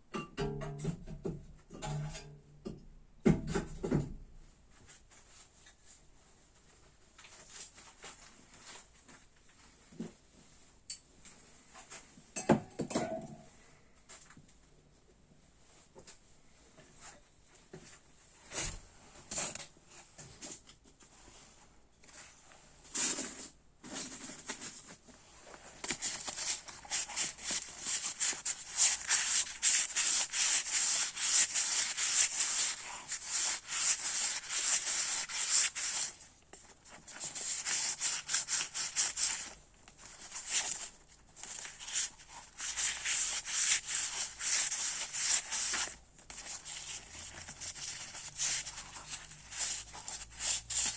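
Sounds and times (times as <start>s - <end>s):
sandpaper rasping on metal: 26.1s - 36.2s, 41.7s - 50.9s.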